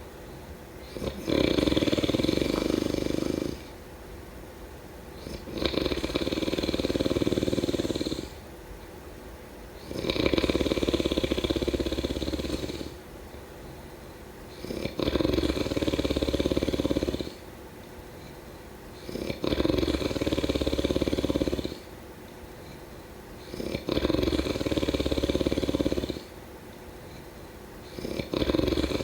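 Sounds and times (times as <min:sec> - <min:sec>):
rattling snores: 0:00.8 - 0:03.8, 0:05.2 - 0:08.5, 0:09.8 - 0:13.0, 0:14.5 - 0:17.5, 0:18.2 - 0:21.9, 0:22.6 - 0:26.4, 0:27.0 - 0:29.0.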